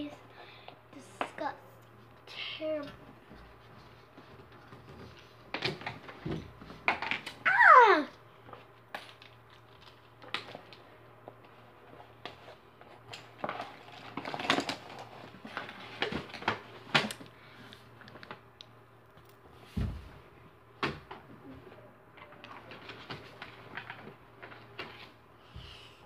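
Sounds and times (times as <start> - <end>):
small objects clicking and rustling: 12.2 - 17.3.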